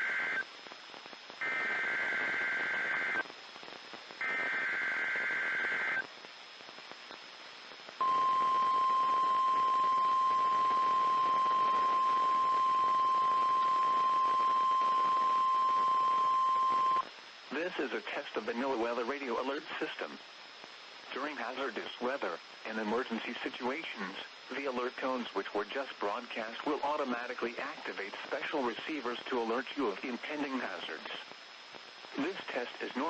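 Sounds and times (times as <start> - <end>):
radio static: 0.0 - 33.0
steady alarm tone: 8.0 - 17.0.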